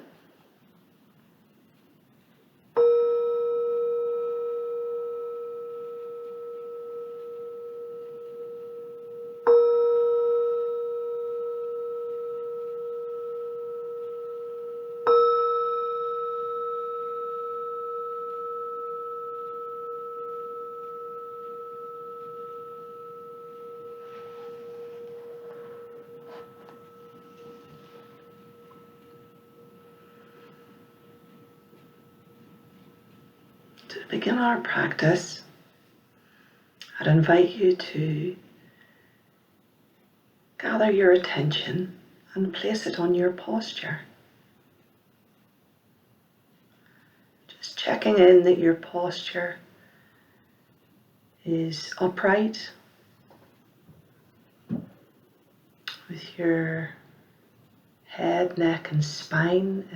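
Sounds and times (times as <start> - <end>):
meditation bell ringing: 2.6 - 40.0.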